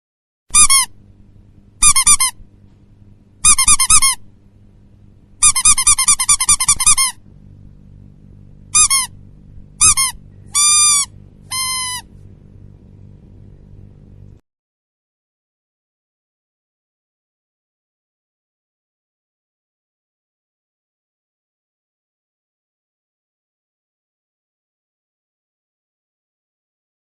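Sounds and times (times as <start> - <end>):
rubber duck toy squeaking: 0.5 - 0.9, 1.8 - 2.4, 3.4 - 4.2, 5.4 - 7.2, 8.7 - 9.2, 9.8 - 12.1
faint low hum: 0.5 - 14.4.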